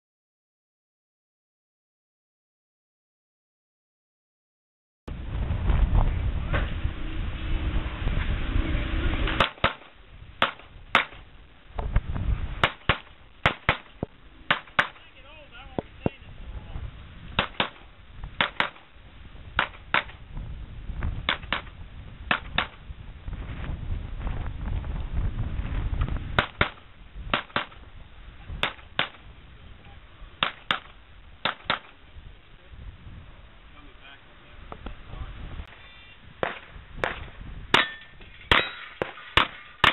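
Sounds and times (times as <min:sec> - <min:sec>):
steady low rumble: 0:05.1 - 0:39.9
gunshots: 0:09.3 - 0:11.2, 0:12.6 - 0:15.1, 0:17.4 - 0:18.9, 0:19.6 - 0:20.2, 0:21.3 - 0:21.7, 0:26.4 - 0:27.8, 0:28.6 - 0:29.2, 0:30.4 - 0:32.0, 0:36.4 - 0:39.9.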